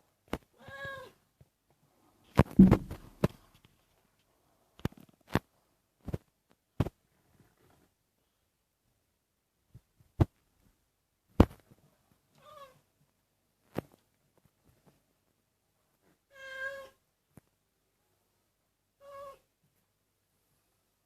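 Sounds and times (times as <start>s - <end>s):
cat meowing: 16.3s - 17.0s, 19.0s - 19.4s.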